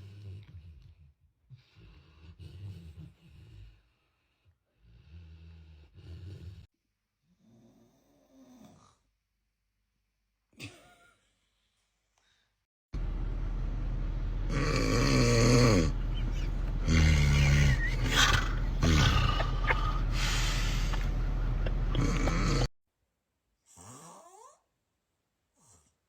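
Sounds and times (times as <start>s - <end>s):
loud rough snoring: 4.8s - 6.7s, 7.4s - 9.0s, 14.5s - 22.7s, 23.7s - 24.6s
steady low hum: 13.0s - 22.7s
noisy breathing: 13.8s - 22.7s.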